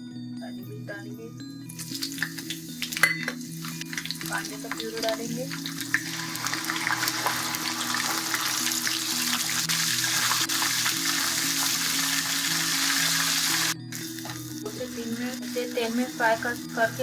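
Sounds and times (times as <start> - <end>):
soft background music: 0.0 - 17.0
onion sizzling in hot oil: 1.7 - 17.0
stirring clicks: 1.8 - 7.5.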